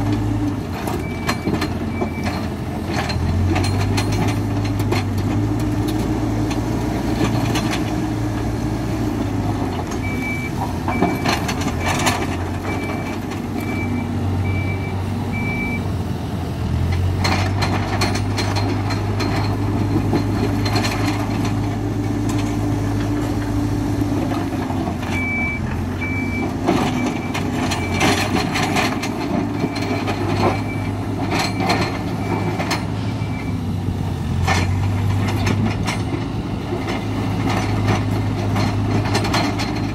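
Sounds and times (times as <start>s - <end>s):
diesel engine running: 0.0s - 39.9s
reversing alarm beeping: 10.0s - 12.0s, 12.7s - 15.8s, 25.1s - 28.3s, 29.6s - 33.6s.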